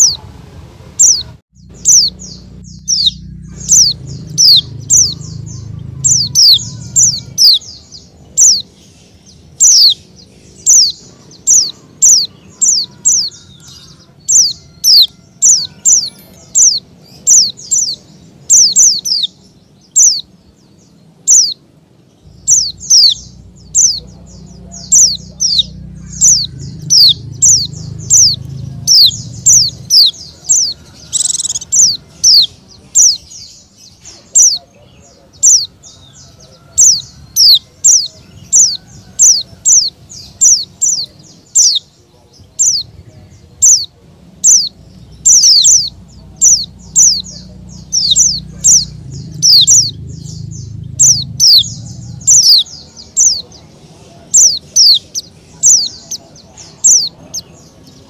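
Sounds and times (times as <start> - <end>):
bird chirping: 0.0 - 0.4, 1.0 - 58.0.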